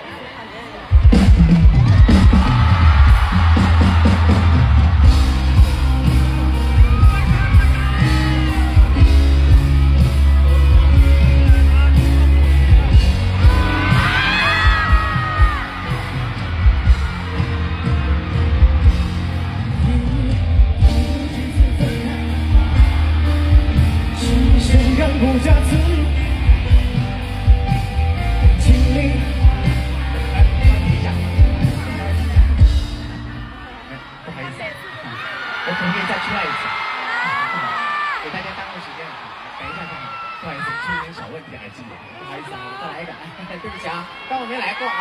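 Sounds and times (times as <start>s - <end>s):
crowd screaming and whooping: 0.0s - 45.0s
live band with heavy bass and drums: 0.8s - 34.6s.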